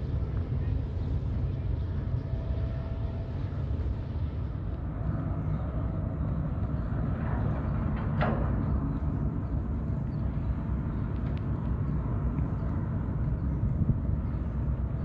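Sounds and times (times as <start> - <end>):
ferry engines rumbling: 0.0 - 15.0.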